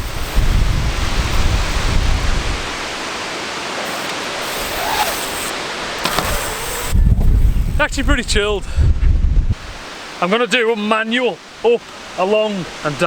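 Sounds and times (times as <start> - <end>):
wind buffeting microphone: 0.0 - 3.0, 5.9 - 9.9.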